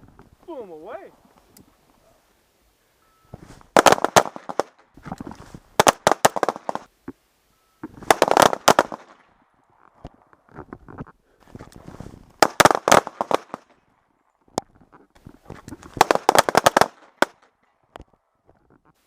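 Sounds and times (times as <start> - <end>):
pistol gunshots: 3.8 - 4.7, 5.8 - 6.9, 8.0 - 9.2, 12.4 - 13.6, 16.0 - 17.4.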